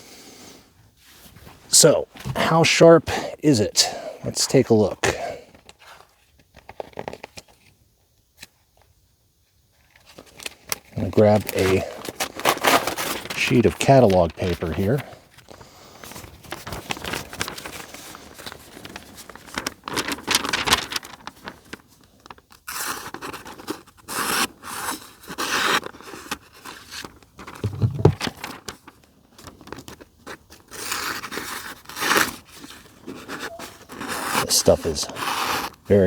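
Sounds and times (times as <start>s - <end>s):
thin paper rustling and scraping: 9.9s - 35.8s
dull bump: 27.6s - 28.3s.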